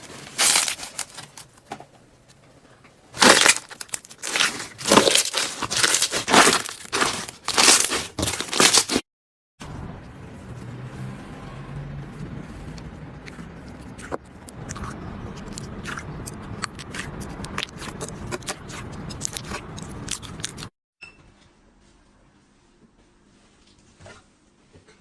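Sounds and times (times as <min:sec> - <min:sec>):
slime popping and crackling: 0:03.2 - 0:09.0
slime squishing: 0:03.2 - 0:09.0, 0:13.2 - 0:20.7.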